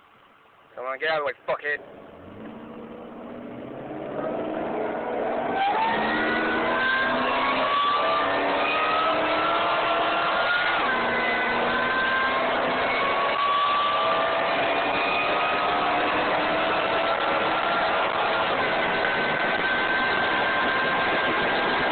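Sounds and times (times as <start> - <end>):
vehicle engine accelerating: 1.8 - 21.9.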